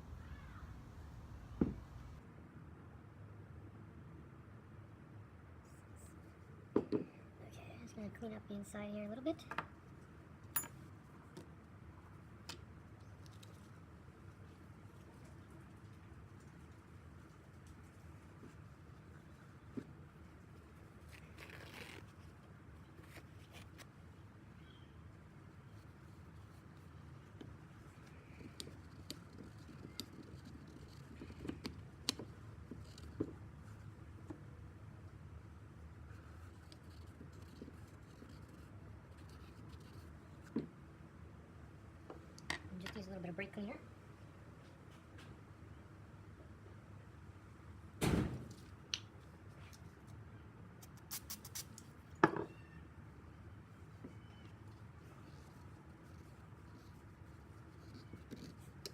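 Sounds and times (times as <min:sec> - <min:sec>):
low steady hum: 0:00.0 - 0:02.3.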